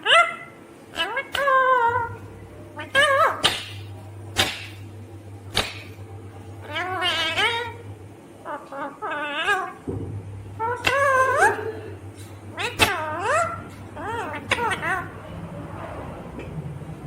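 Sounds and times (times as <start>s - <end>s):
parakeet wavering calls: 0.0s - 4.8s, 6.6s - 7.8s, 8.4s - 9.9s, 10.5s - 11.9s, 12.5s - 15.3s.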